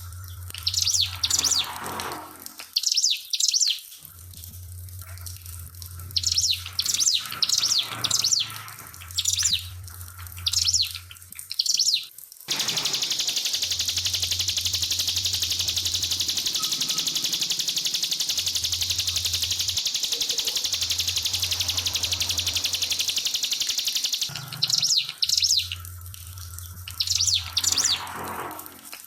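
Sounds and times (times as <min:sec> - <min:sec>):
bird singing high chirps: 0:00.6 - 0:01.7, 0:02.8 - 0:03.9, 0:06.1 - 0:08.5, 0:09.2 - 0:09.7, 0:10.4 - 0:11.0, 0:11.6 - 0:25.8, 0:26.9 - 0:28.1
low hum: 0:12.5 - 0:28.2
steady high hiss: 0:12.5 - 0:28.2.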